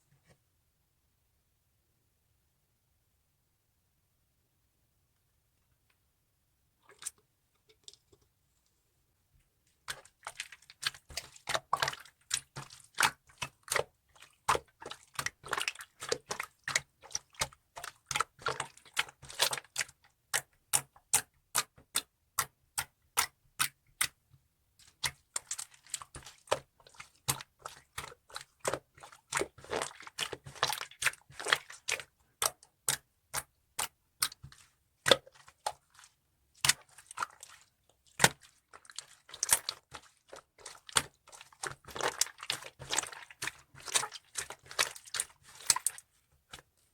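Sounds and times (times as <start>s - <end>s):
slime squished by hand: 25.0s - 46.7s.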